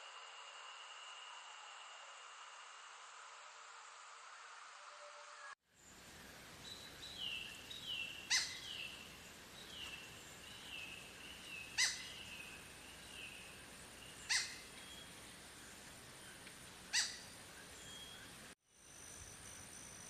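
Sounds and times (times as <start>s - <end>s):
down-slurred whistled bird notes: 17.0s - 18.4s
high insect whine: 18.2s - 20.0s.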